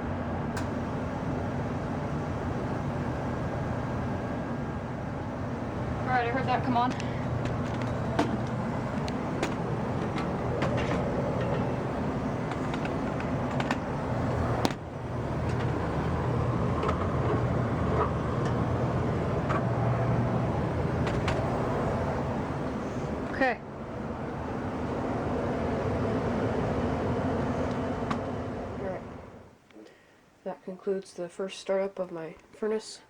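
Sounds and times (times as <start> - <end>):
blower fan air rush: 0.0 - 29.5
gas furnace humming: 0.0 - 29.7.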